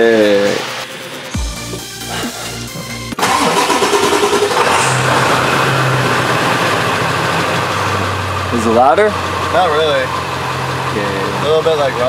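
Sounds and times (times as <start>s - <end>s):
diesel van engine rumbling: 1.4s - 12.0s.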